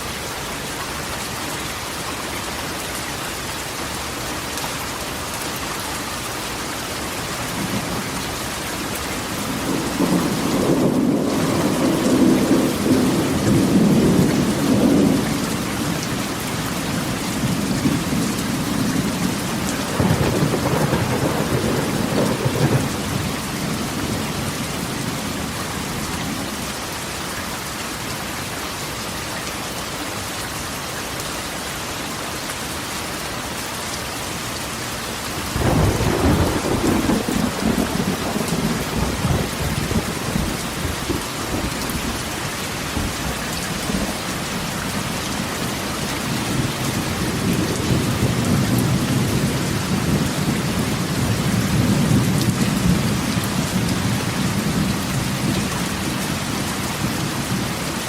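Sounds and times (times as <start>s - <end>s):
rain on a tin roof: 0.0s - 58.0s
thunder rumbling: 9.2s - 25.6s, 35.6s - 56.2s.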